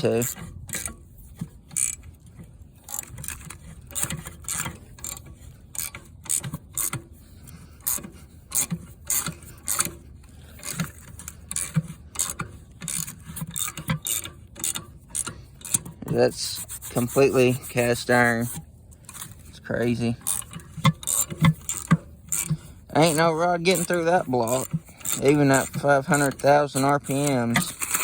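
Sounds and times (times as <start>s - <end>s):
hand tools clanking on metal: 10.6s - 28.0s.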